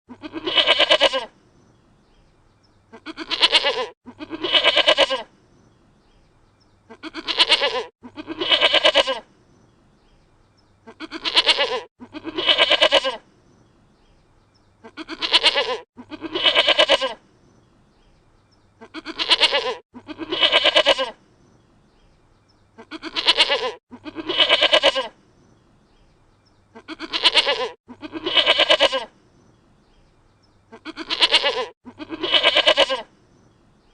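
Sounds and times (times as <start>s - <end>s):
goat bleating: 0.1s - 1.3s, 2.9s - 5.3s, 6.9s - 9.3s, 10.8s - 13.2s, 14.8s - 17.2s, 18.8s - 21.2s, 22.8s - 25.2s, 26.7s - 29.1s, 30.7s - 33.1s.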